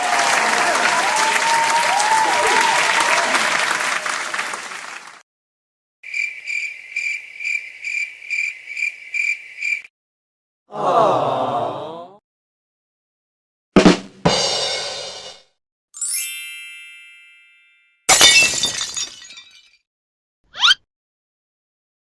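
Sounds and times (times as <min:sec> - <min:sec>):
crowd applause: 0:00.0 - 0:05.2
cricket chirping: 0:06.0 - 0:09.9.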